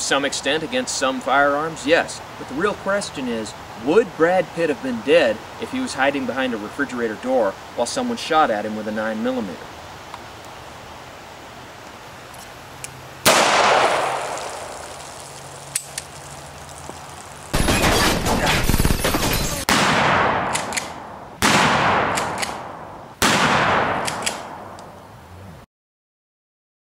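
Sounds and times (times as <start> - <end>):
pistol shots with echo: 13.2 - 14.7, 19.6 - 24.8.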